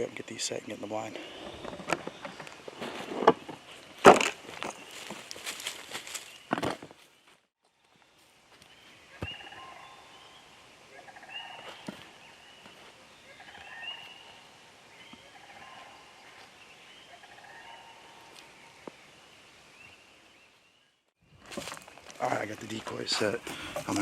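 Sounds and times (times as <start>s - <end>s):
turkey gobbling: 15.2s - 16.1s, 17.1s - 18.1s.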